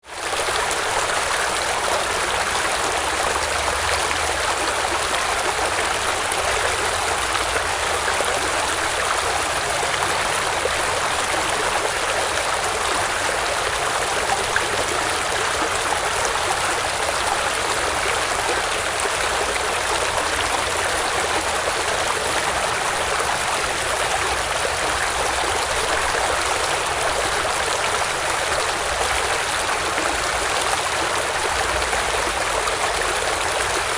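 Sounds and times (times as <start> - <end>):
stream water flowing: 0.0 - 33.9.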